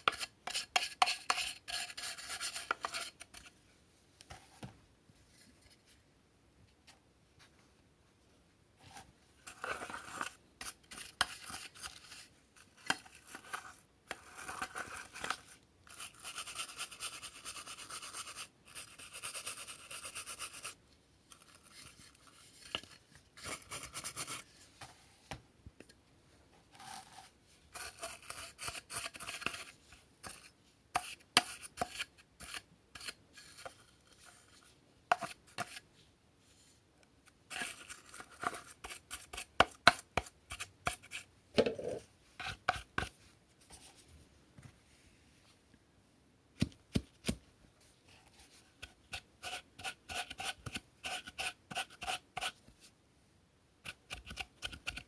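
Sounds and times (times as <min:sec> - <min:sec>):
plastic parts scraping and rubbing: 0:08.8 - 0:16.3, 0:37.5 - 0:44.1.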